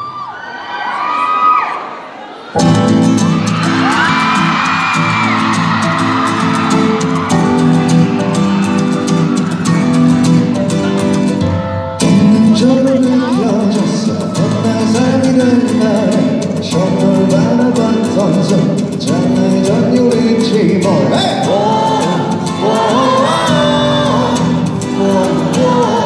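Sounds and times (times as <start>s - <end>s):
acoustic guitar strumming: 2.6s - 26.0s
person singing: 12.0s - 26.0s.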